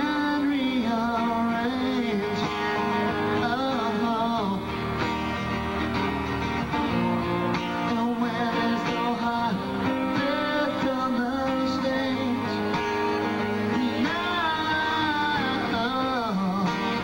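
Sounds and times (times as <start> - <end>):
person singing lead vocal: 0.0 - 5.4, 7.5 - 17.0
strummed acoustic guitars: 0.0 - 17.0.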